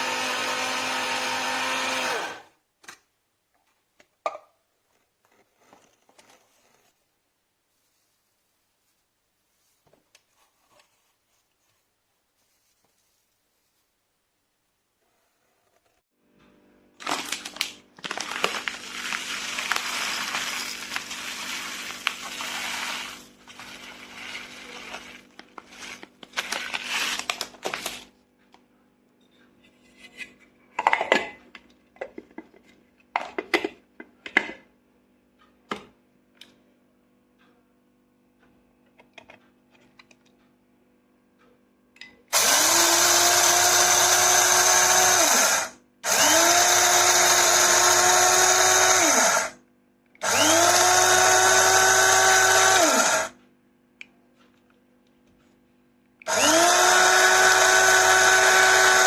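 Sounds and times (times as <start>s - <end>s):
coffee grinder motor whining: 0.0s - 2.5s, 18.0s - 27.9s, 42.3s - 49.6s, 50.2s - 53.4s, 56.3s - 59.0s.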